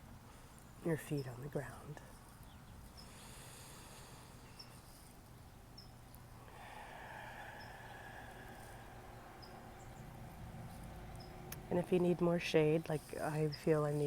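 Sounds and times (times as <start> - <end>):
soft background noise: 0.0 - 14.0
faint high chirps: 6.7 - 10.1.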